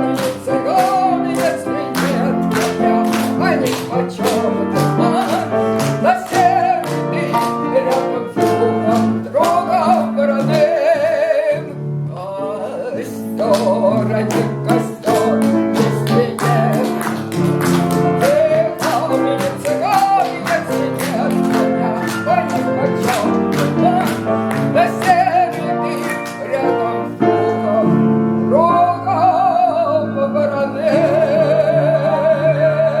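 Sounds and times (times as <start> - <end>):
operetta song with vibrato: 0.0 - 33.0.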